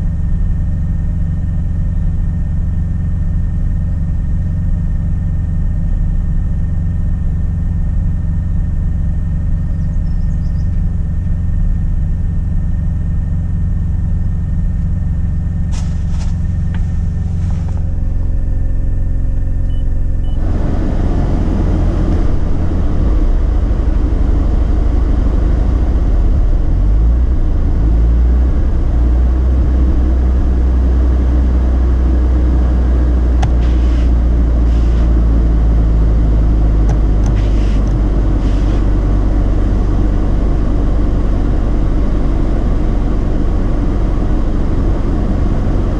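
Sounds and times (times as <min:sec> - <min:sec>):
rotary engine running: 0:15.3 - 0:30.6, 0:31.4 - 0:45.9.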